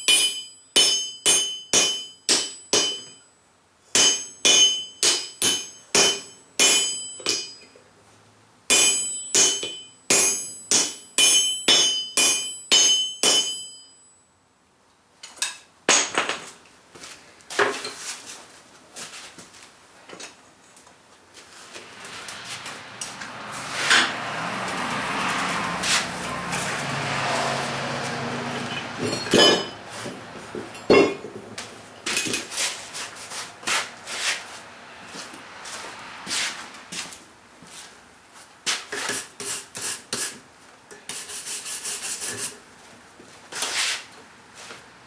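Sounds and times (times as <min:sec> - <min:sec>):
hammer on anvil ringing: 0:00.0 - 0:03.3, 0:03.9 - 0:07.7, 0:08.7 - 0:14.2, 0:28.7 - 0:29.8, 0:30.8 - 0:31.2.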